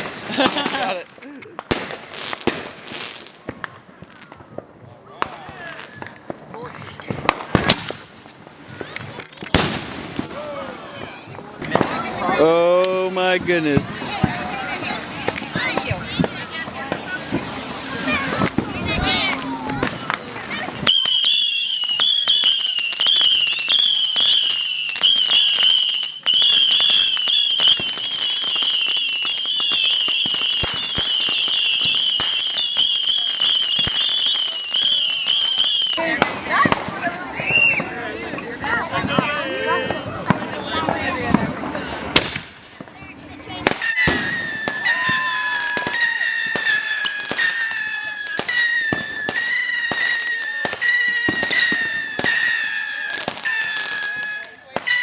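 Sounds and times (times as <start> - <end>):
firework high whistle: 14.2 - 36.0, 37.3 - 38.0, 43.6 - 55.0.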